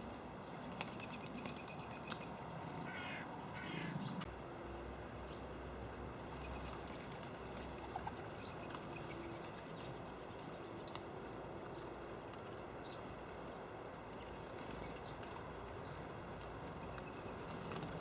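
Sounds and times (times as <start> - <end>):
harsh bird call: 2.9 - 4.2.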